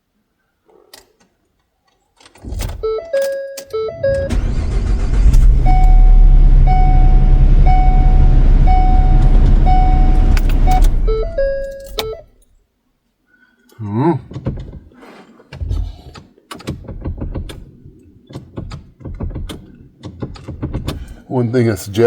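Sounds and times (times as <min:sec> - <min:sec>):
dashboard chimes: 0:02.9 - 0:04.4, 0:05.6 - 0:12.3
warning chime ringing: 0:03.0 - 0:12.3
van engine starting and running: 0:03.8 - 0:12.3.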